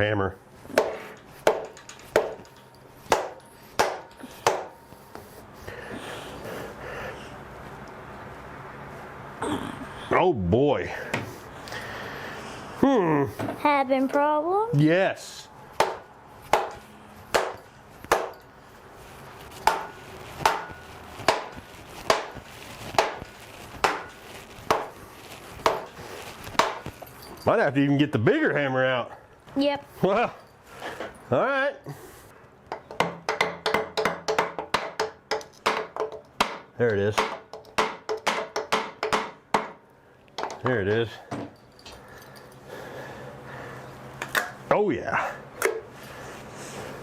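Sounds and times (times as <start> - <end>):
hammer striking metal: 0.7 - 4.9, 15.8 - 18.5, 19.6 - 22.3.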